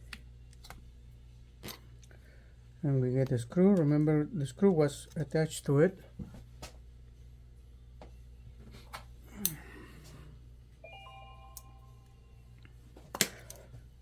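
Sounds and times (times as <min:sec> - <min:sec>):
faint steady tones: 0:10.7 - 0:13.0.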